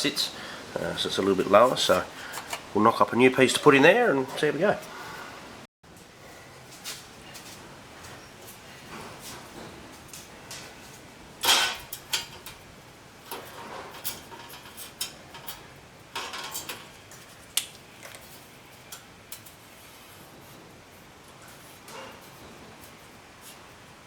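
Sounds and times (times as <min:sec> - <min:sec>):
metal tools clattering and clinking: 0:11.4 - 0:12.6, 0:13.3 - 0:17.2.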